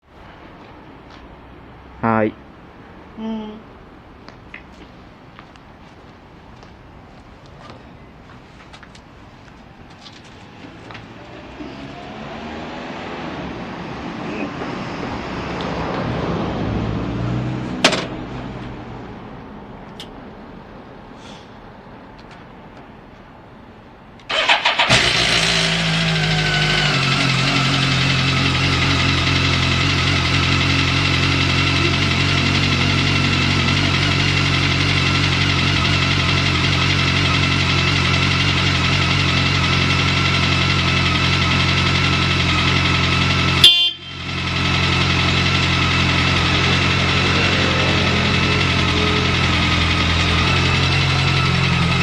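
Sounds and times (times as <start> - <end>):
motorcycle engine starting and idling: 24.2 - 52.0.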